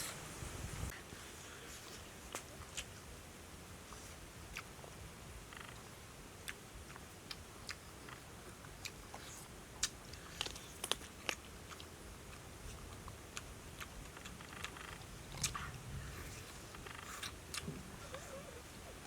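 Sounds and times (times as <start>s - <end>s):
person chewing with crunches: 6.4s - 19.0s.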